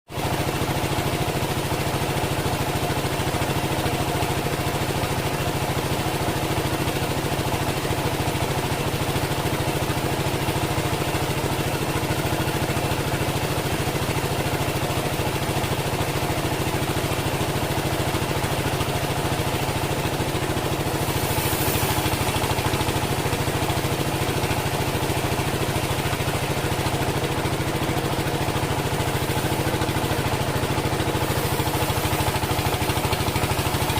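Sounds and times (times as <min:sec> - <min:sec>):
sawmill engine droning: 0:00.2 - 0:33.9
burst of hiss: 0:20.9 - 0:23.0.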